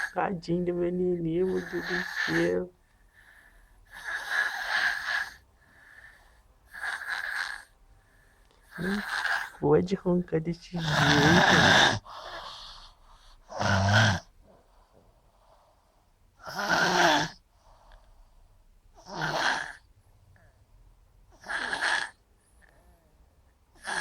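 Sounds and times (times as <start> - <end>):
quiet breathing: 1.2 - 19.1, 22.1 - 24.0
person snoring heavily: 8.7 - 9.6, 10.8 - 12.8, 13.5 - 14.3, 16.4 - 17.4, 19.0 - 19.8, 21.4 - 22.2.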